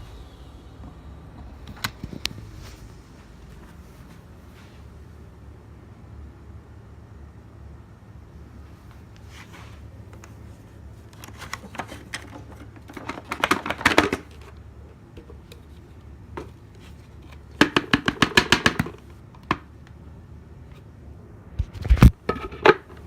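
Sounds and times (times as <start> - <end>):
low steady hum: 0.0 - 23.0
rapid clicking and rattling: 11.1 - 14.6.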